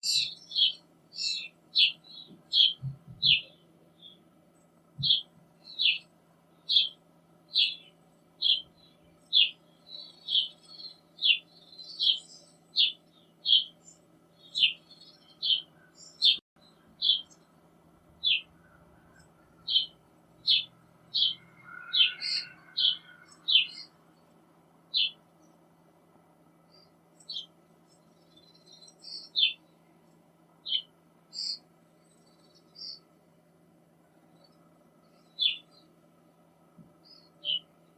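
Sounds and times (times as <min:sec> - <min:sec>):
young starling begging calls: 0:00.0 - 0:04.2, 0:05.0 - 0:17.5, 0:18.2 - 0:24.0, 0:24.9 - 0:25.3, 0:26.7 - 0:29.7, 0:30.6 - 0:33.1, 0:35.2 - 0:35.9, 0:37.0 - 0:37.7.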